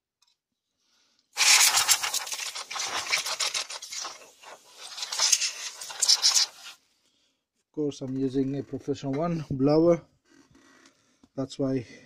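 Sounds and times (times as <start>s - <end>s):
stiff brush scrubbing dust: 1.4s - 6.8s.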